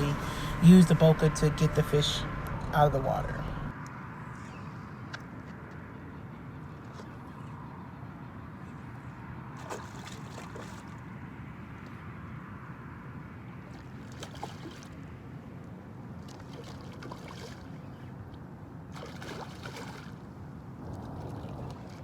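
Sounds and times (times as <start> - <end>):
fish splashing water: 9.5 - 11.1, 13.6 - 15.2, 16.1 - 18.1, 18.9 - 22.0
wind rumble on microphone: 20.3 - 22.0.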